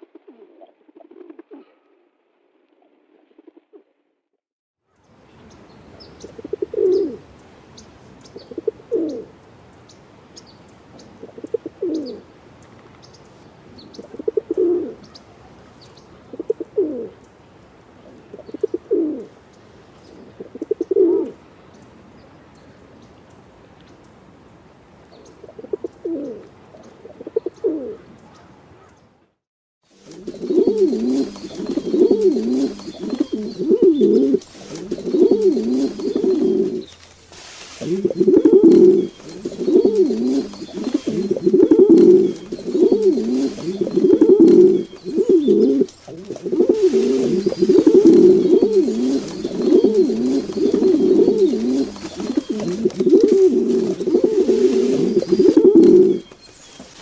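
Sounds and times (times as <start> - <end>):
pigeons cooing: 6.2 - 7.3, 8.4 - 9.3, 11.0 - 12.3, 13.9 - 15.2, 16.3 - 17.2, 18.0 - 19.3, 20.1 - 21.4, 25.4 - 28.9, 30.0 - 57.0.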